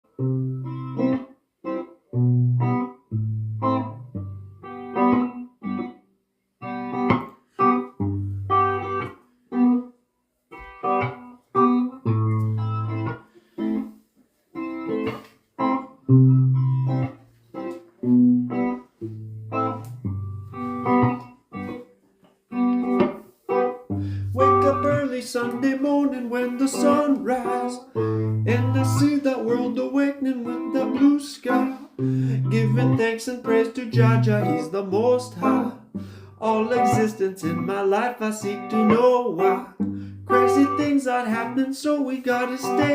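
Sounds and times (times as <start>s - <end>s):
plucked guitar chords: 0.1s - 13.9s, 14.6s - 42.9s.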